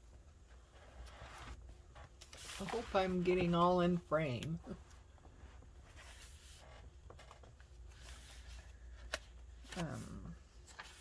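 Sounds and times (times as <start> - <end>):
paper pages rustling: 0.7 - 3.8, 5.4 - 11.0.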